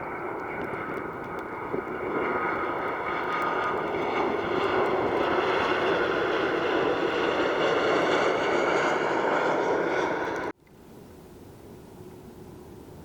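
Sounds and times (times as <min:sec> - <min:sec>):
jet engines running: 0:00.0 - 0:10.6.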